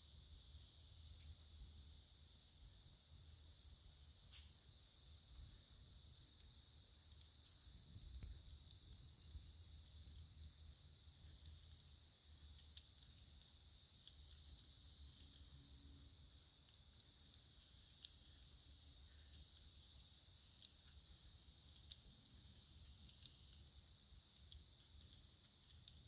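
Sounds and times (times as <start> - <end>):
insects shrilling: 10.7 - 26.0.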